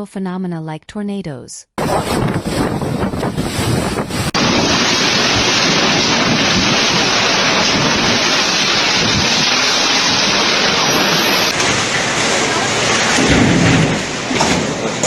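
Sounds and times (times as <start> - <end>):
wind buffeting microphone: 1.8 - 11.6
rain: 4.3 - 15.0.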